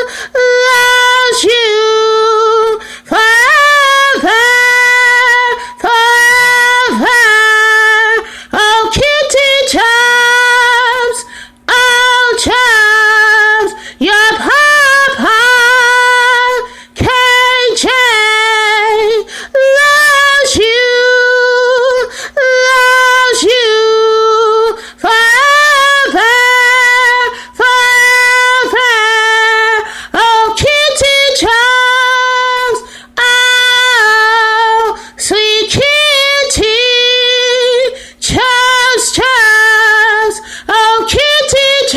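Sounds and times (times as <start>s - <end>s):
woman singing unaccompanied: 0.0s - 41.9s
singer breathing: 0.1s - 0.4s, 2.8s - 3.1s, 8.2s - 8.6s, 11.3s - 11.7s, 13.8s - 14.0s, 16.7s - 17.0s, 19.3s - 19.6s, 22.1s - 22.4s, 24.8s - 25.0s, 27.4s - 27.6s, 29.8s - 30.2s, 32.8s - 33.2s, 38.0s - 38.2s, 40.4s - 40.7s.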